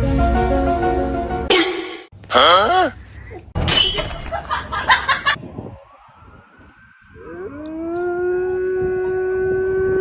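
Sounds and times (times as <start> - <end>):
dog howling: 5.4 - 10.0.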